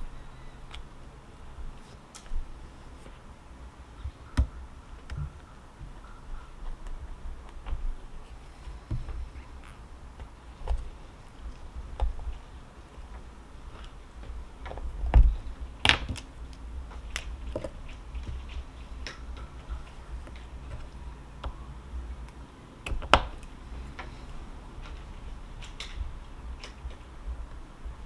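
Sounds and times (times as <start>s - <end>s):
steady low rumble: 0.0s - 28.0s
small clicks and taps: 8.6s - 27.6s.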